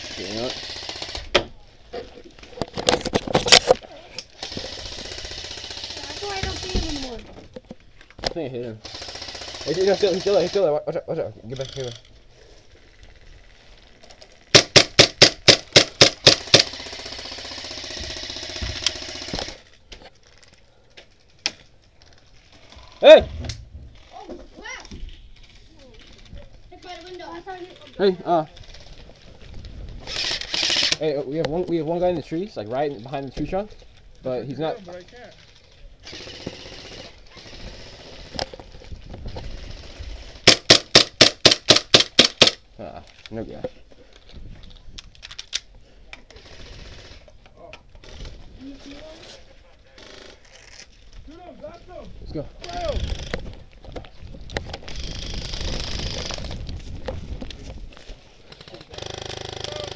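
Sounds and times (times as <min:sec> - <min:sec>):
airsoft gun full-auto burst: 0:00.0 - 0:01.3, 0:04.4 - 0:07.1, 0:08.8 - 0:10.7, 0:14.5 - 0:19.7, 0:30.1 - 0:31.0, 0:36.0 - 0:38.4, 0:39.5 - 0:42.6, 0:46.4 - 0:47.3
airsoft rifle shots: 0:14.5 - 0:19.6, 0:39.4 - 0:42.6.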